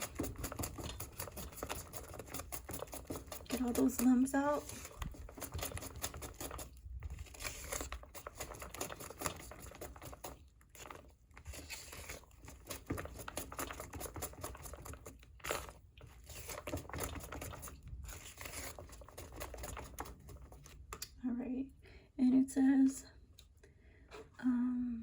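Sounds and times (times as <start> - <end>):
utensil scraping a bowl: 0.0 - 20.8.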